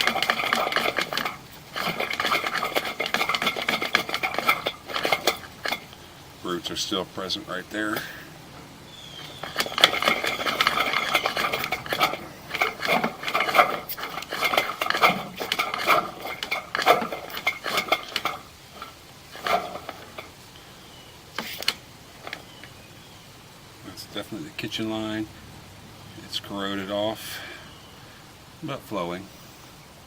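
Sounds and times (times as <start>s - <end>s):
metal clinking and rattling: 0.0s - 6.7s, 7.9s - 20.5s, 21.3s - 22.8s.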